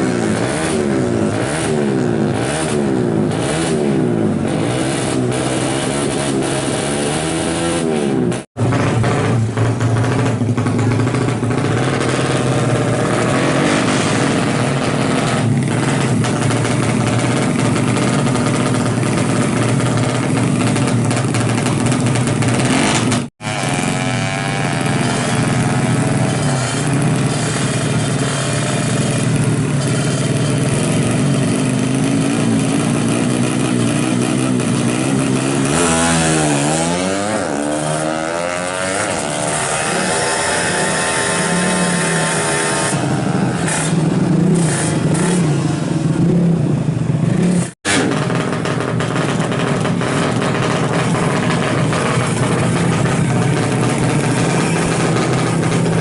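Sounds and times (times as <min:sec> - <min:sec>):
motorcycle engine running: 0:00.0 - 0:56.0.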